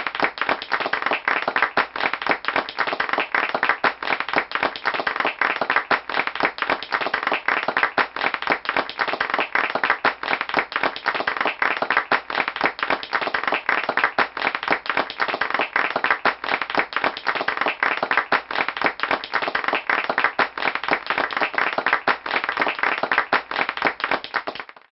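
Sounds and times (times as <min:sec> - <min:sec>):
audience applauding: 0:00.0 - 0:24.9.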